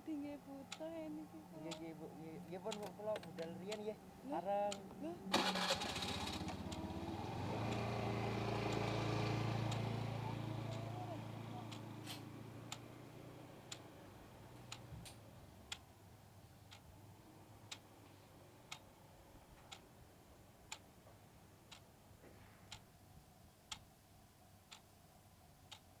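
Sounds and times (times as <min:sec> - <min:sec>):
low engine hum: 0:00.0 - 0:15.6
faint clock ticking: 0:00.0 - 0:26.0.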